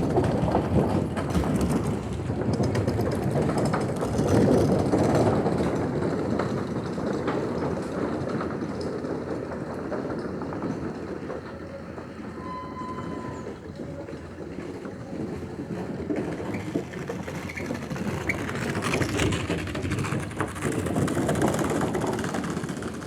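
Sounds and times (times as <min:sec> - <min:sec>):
train wheels clattering on rails: 0:00.0 - 0:23.0.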